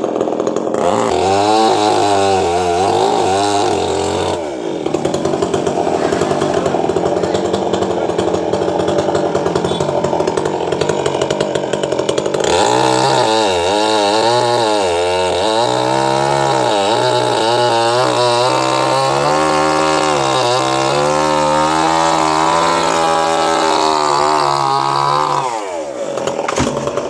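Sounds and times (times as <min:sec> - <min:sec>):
chainsaw cutting wood: 0:00.0 - 0:27.0.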